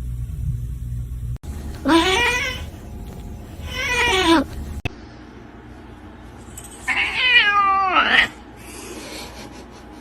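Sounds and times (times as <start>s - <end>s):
cat meowing: 1.8s - 2.7s, 3.6s - 4.5s, 6.9s - 8.4s.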